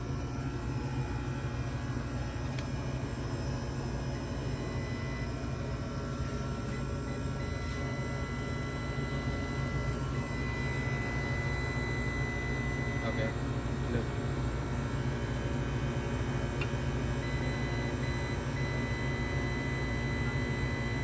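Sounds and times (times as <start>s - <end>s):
faint high whine: 0.0s - 14.2s
refrigeration unit humming: 0.0s - 21.0s.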